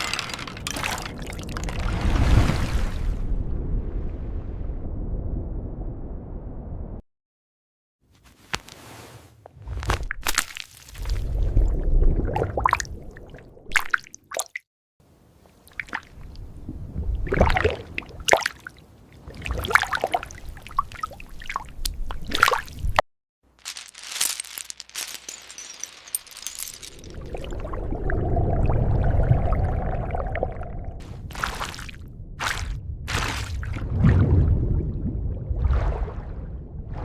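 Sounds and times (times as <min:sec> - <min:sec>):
rush of water: 0:00.7 - 0:03.2
sea water splashing: 0:00.7 - 0:03.2, 0:15.6 - 0:22.8, 0:24.2 - 0:37.0.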